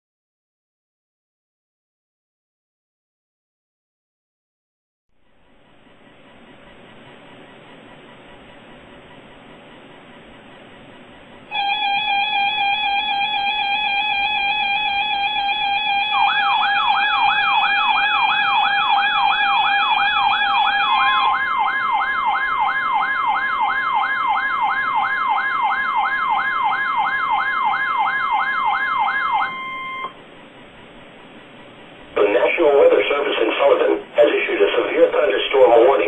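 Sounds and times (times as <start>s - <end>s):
electronic siren sweeping: 11.5s - 30.2s
steady buzzing alarm tone: 11.5s - 30.2s.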